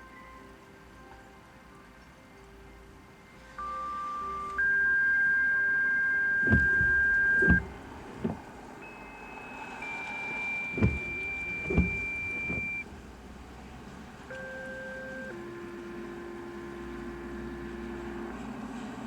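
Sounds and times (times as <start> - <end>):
two-tone radio activation tones: 3.6 - 12.8
dull thumps: 4.4 - 8.5, 10.2 - 12.8.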